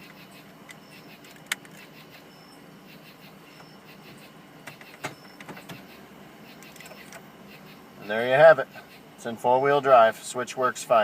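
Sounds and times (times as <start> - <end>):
faint steady background noise: 0.0 - 11.0.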